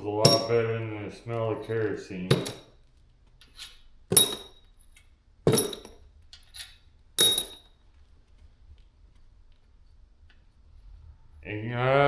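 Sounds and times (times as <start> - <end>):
metal bolts clinking on metal: 0.2 - 0.8, 1.5 - 2.7, 3.4 - 7.8.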